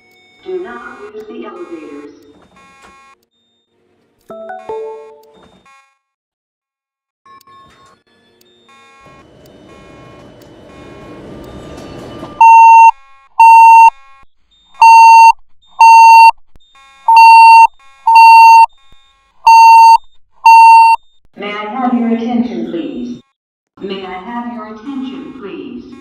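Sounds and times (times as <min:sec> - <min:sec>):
electronic fire alarm tones: 0:12.4 - 0:13.9, 0:14.8 - 0:16.4, 0:17.1 - 0:18.7, 0:19.5 - 0:21.0
faint beeping: 0:17.1 - 0:18.7.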